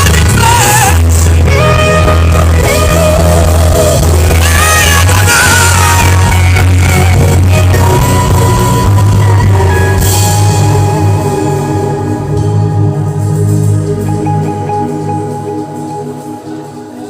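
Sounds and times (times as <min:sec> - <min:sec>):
person singing: 0:00.0 - 0:12.7
deep bass: 0:00.0 - 0:16.3
keyboard chords: 0:00.0 - 0:17.0.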